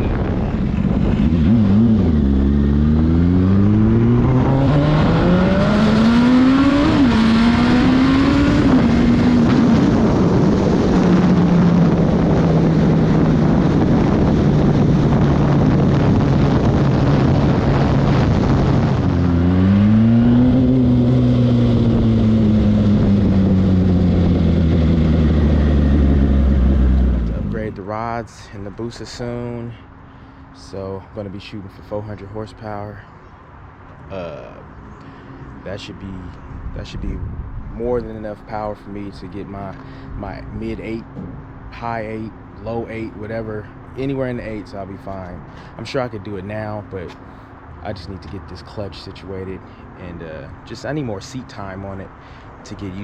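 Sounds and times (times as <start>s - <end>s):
motorcycle engine revving: 0.0s - 27.8s.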